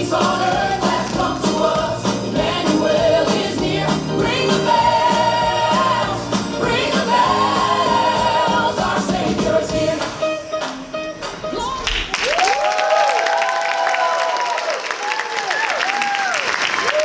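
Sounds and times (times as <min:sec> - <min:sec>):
children singing together: 0:00.0 - 0:10.3.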